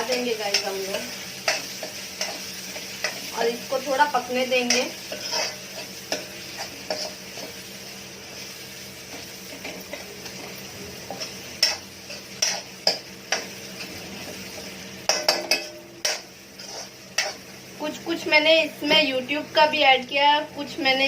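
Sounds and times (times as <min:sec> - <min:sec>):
spatula scraping a pan: 0:00.0 - 0:07.7, 0:09.1 - 0:17.5
vegetables sizzling on a pan: 0:00.0 - 0:21.0.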